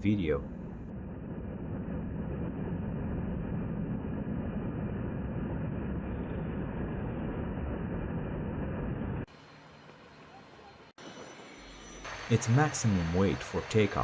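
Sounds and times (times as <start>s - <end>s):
helicopter engines and rotor: 5.9s - 14.0s.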